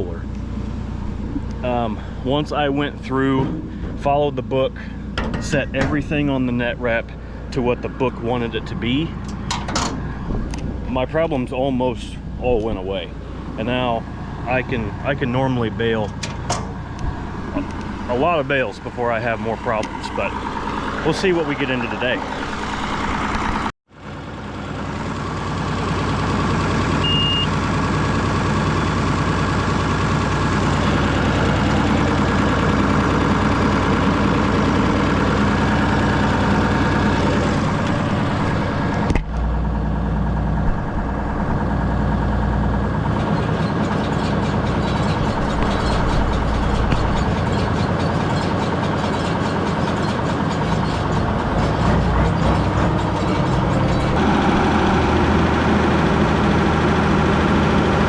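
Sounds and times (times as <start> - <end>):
tractor diesel engine running: 0.0 - 58.0
short high beep: 27.0 - 27.5.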